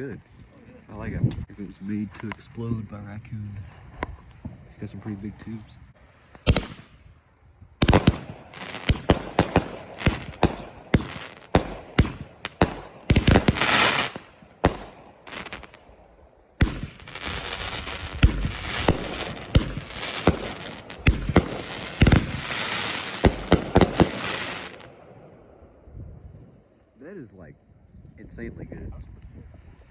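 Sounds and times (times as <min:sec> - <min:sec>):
firework crackling hiss: 0:06.2 - 0:07.0, 0:07.8 - 0:24.9
firework launch thumps and bursts: 0:06.3 - 0:07.0, 0:07.8 - 0:15.9, 0:16.6 - 0:24.9.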